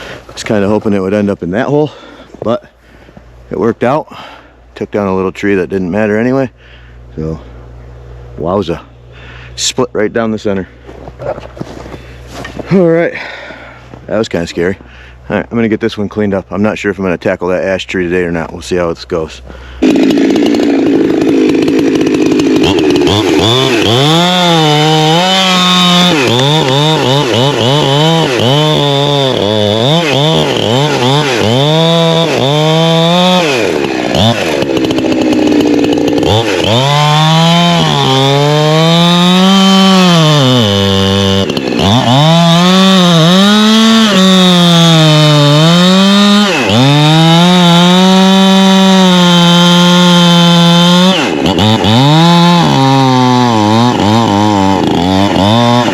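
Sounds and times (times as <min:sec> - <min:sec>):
chainsaw cutting wood: 0:00.0 - 0:00.8, 0:19.5 - 0:55.9.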